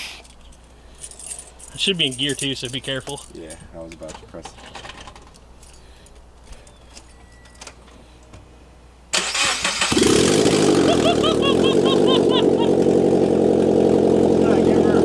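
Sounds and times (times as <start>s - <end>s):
engine starter cranking: 9.1s - 11.1s
loud raw engine running: 9.2s - 15.0s.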